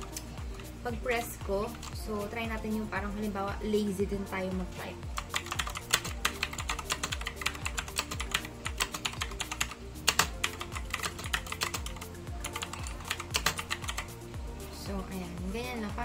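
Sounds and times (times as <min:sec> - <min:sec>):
background music: 0:00.0 - 0:16.0
mechanical keyboard typing: 0:05.2 - 0:14.1.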